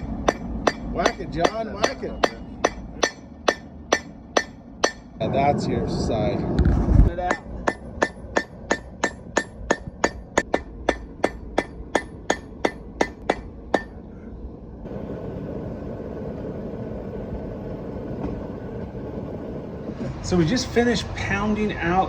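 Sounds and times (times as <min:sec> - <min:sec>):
hammer ringing on anvil: 0:00.0 - 0:05.1, 0:07.2 - 0:14.0
steady noise: 0:14.6 - 0:22.0.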